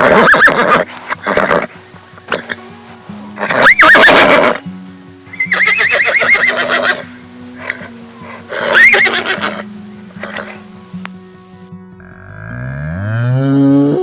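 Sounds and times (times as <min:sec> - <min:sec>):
soft background music: 0:00.0 - 0:13.7
animal calling with wavering pitch: 0:03.4 - 0:04.6, 0:05.3 - 0:10.7, 0:12.0 - 0:14.0.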